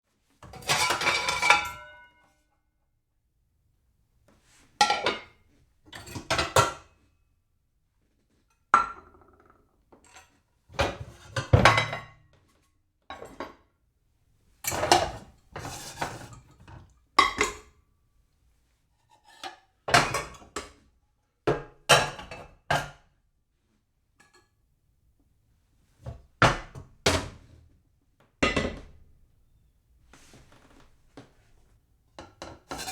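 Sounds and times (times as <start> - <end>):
plates and cutlery clattering: 0.5 - 2.2, 32.2 - 32.9.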